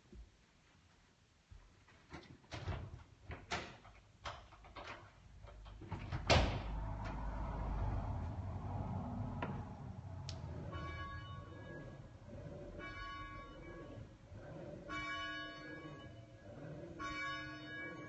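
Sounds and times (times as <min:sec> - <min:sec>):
low rumble: 0:06.2 - 0:15.0.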